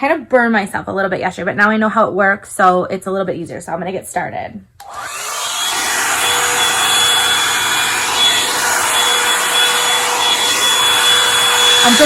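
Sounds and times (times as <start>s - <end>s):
hair dryer blowing air: 4.8s - 12.0s
thin fan whine: 5.0s - 12.0s.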